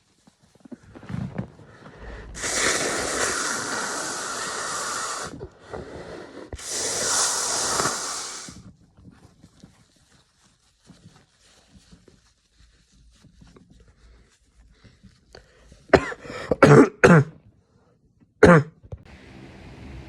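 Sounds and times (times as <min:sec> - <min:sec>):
man breathing hard: 0:01.6 - 0:08.6.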